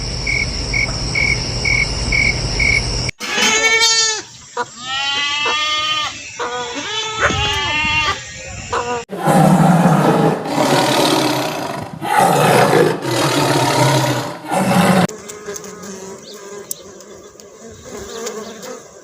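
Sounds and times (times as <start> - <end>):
large animal roaring: 9.1 - 15.1.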